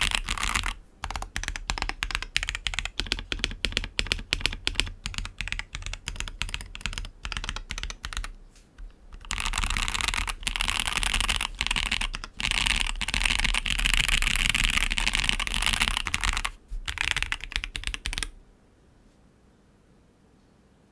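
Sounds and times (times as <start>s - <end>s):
mechanical keyboard typing: 0.0s - 18.4s.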